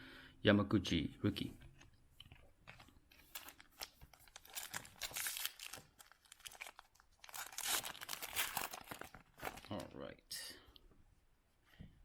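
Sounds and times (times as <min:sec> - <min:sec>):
trading cards crinkling and scraping: 0:01.8 - 0:09.9.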